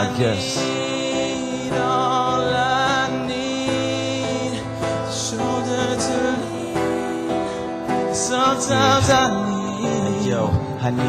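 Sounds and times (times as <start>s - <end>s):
held chords: 0.0s - 11.0s
singing with vibrato: 0.0s - 11.0s.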